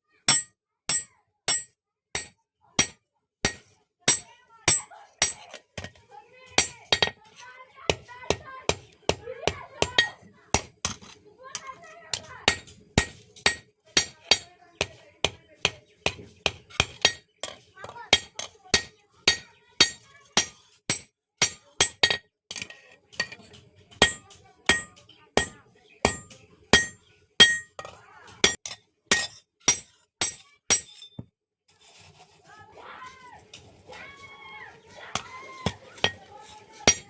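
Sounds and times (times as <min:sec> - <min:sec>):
hammer striking metal on anvil: 0:00.3 - 0:05.4, 0:12.5 - 0:14.5, 0:24.0 - 0:31.2.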